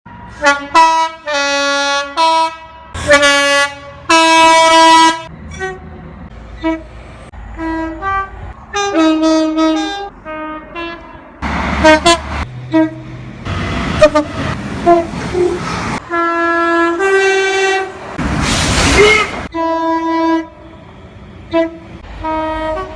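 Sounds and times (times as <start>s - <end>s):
two-tone train horn blasts: 0.3s - 5.9s, 6.6s - 6.9s, 7.5s - 13.2s, 13.8s - 18.0s, 18.9s - 22.9s
rushing noise: 17.6s - 19.5s.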